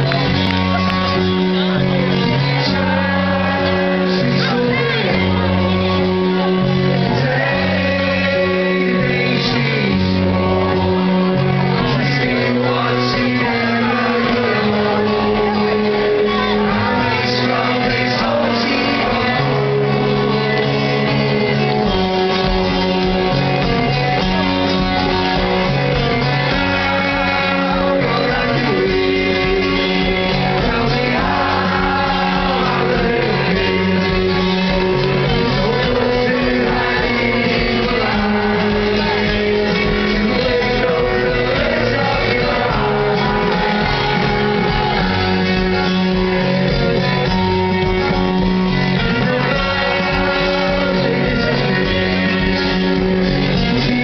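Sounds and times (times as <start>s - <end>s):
live rock band with singing: 0.0s - 54.0s.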